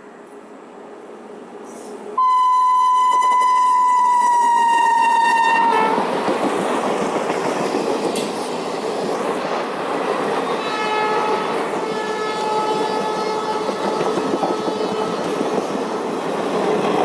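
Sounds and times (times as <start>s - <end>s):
train running past: 0.0s - 17.0s
locomotive horn blast: 2.2s - 6.1s, 10.7s - 15.0s.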